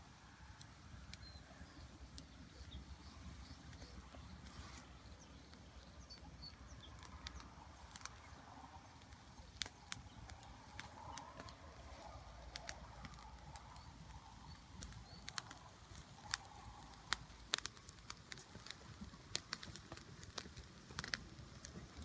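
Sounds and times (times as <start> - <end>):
campfire crackling: 0.0 - 22.0.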